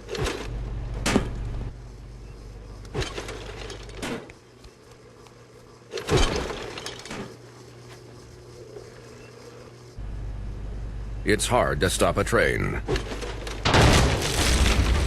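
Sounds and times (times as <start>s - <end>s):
low steady hum: 0.0s - 15.0s
heavy crashing impacts: 13.6s - 15.0s.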